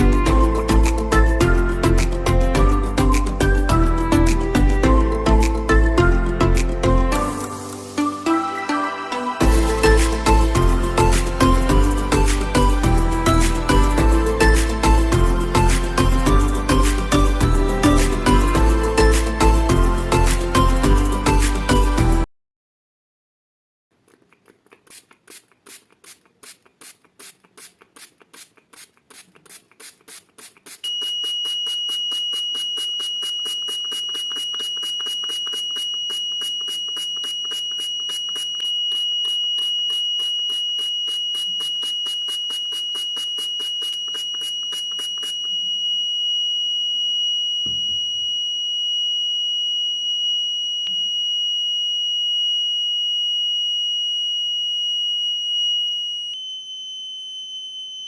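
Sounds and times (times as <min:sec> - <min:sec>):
high-pitched buzzer tone: 0:30.8 - 0:46.2, 0:55.0 - 0:58.0.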